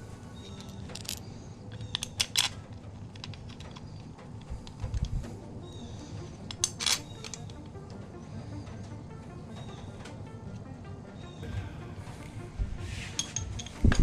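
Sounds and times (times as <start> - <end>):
quiet background music: 0.0 - 14.0
metallic clicks of engine parts: 0.4 - 5.4, 6.2 - 8.0, 13.1 - 14.0.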